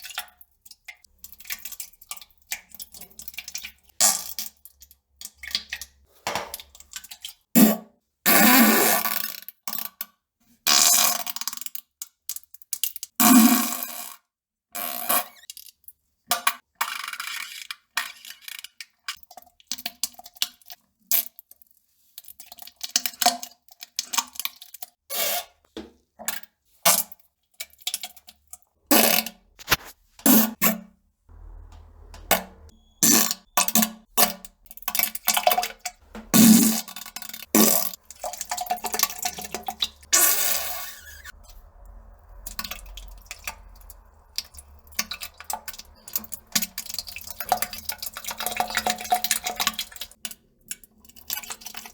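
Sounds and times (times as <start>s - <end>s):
low steady hum: 31.3s - 33.3s, 38.0s - 50.0s
farts and splats: 35.1s - 41.6s.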